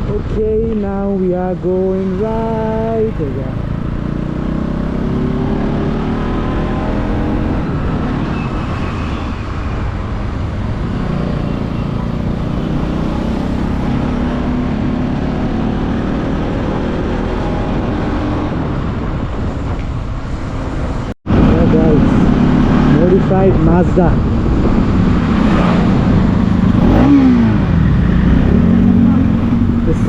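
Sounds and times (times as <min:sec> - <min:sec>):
vehicle engine and road noise: 0:00.0 - 0:30.0.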